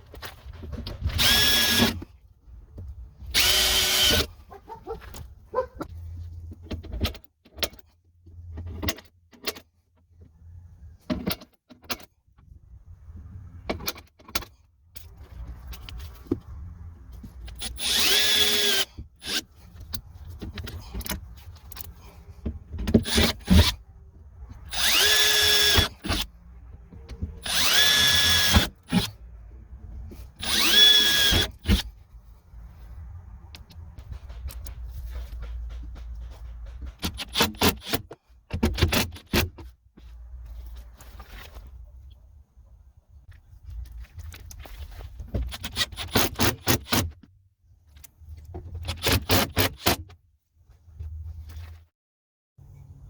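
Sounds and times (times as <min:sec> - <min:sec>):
power drill whining: 0:01.1 - 0:02.0, 0:03.3 - 0:04.3, 0:17.5 - 0:19.5, 0:23.0 - 0:23.7, 0:24.6 - 0:26.3, 0:27.4 - 0:29.2, 0:30.4 - 0:31.8
clicks and knocks of handled parts: 0:04.9 - 0:10.3, 0:11.0 - 0:12.5, 0:13.6 - 0:23.8, 0:33.0 - 0:42.2, 0:43.3 - 0:50.2.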